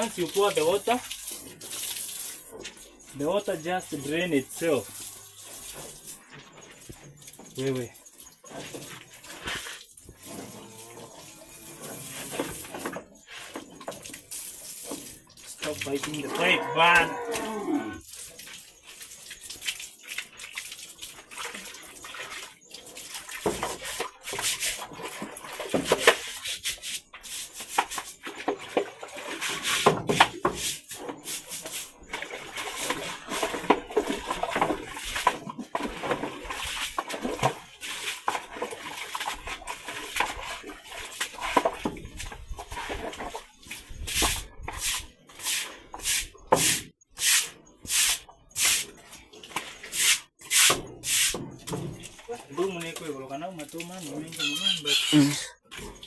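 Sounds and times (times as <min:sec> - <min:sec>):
water sloshing: 0:00.0 - 0:26.4, 0:27.1 - 0:44.1.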